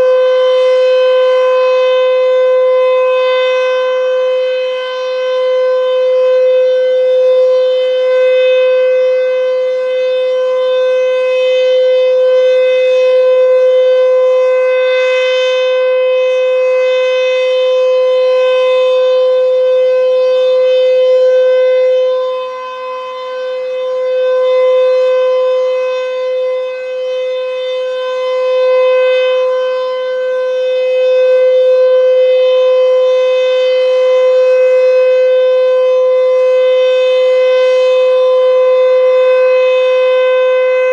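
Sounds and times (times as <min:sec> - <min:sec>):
warning siren steady tone: 0:00.0 - 0:40.9.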